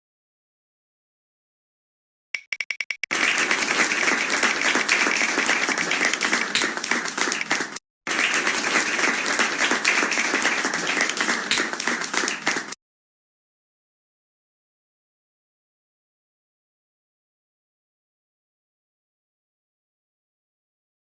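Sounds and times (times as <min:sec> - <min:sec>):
spinning wheel ticking: 0:02.4 - 0:03.1
recorded applause: 0:03.1 - 0:12.8.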